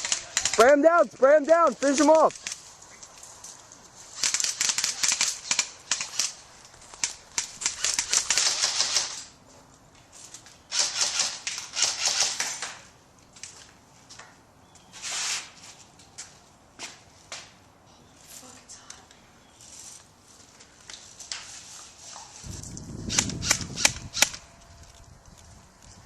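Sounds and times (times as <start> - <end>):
airsoft rifles firing full-auto: 4.2 - 6.4, 7.4 - 9.3, 10.7 - 12.8.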